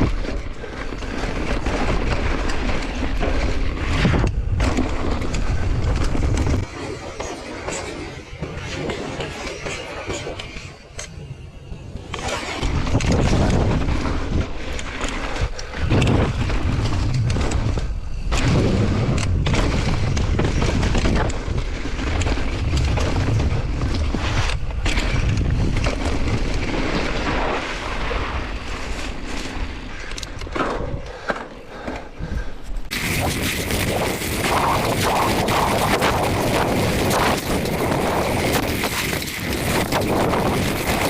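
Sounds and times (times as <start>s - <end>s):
bike tyres rattling on dirt: 0.0s - 41.0s
wind buffeting microphone: 11.3s - 28.8s, 32.1s - 41.0s.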